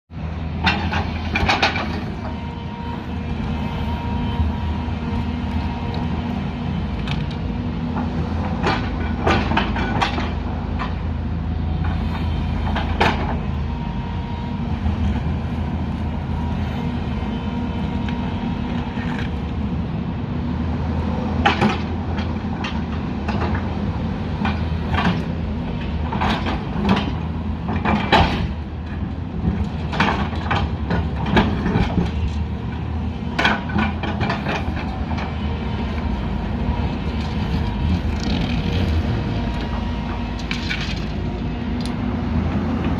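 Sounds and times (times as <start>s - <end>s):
diesel engine running: 0.1s - 42.9s
metallic clanks and knocks: 0.6s - 2.2s, 8.0s - 11.0s.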